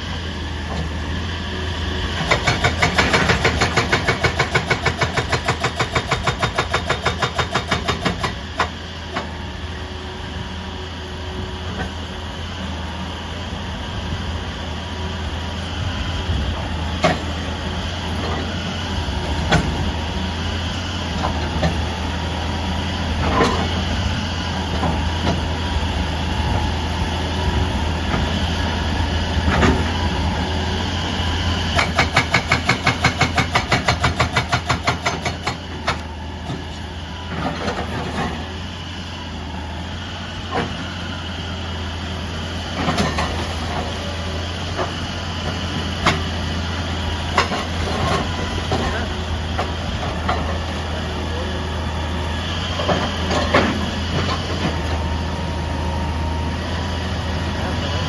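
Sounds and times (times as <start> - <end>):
excavator engine running: 0.0 - 58.0
hydraulic breaker hammer blows: 2.0 - 9.4, 29.4 - 38.6.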